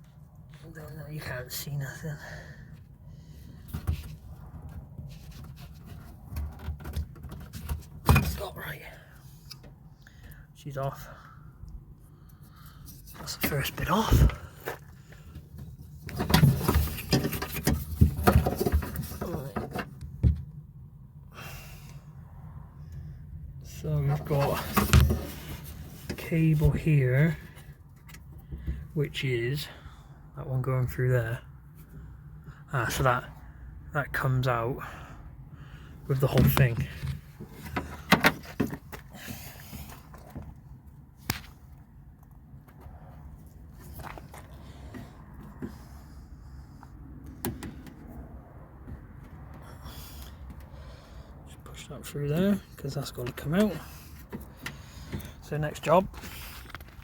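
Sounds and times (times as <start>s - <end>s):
clicks and knocks inside car door: 3.7s - 8.4s, 15.4s - 20.6s, 36.3s - 40.6s, 47.3s - 48.1s.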